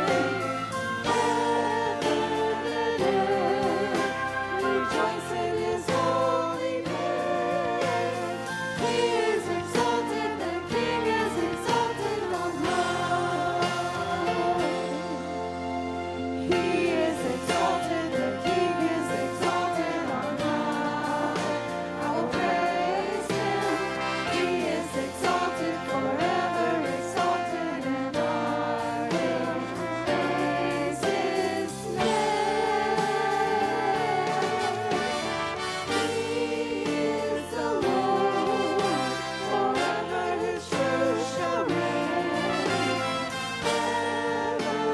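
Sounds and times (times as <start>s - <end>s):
sustained instrumental chords: 0.0s - 44.9s
voices singing with vibrato: 0.0s - 44.9s.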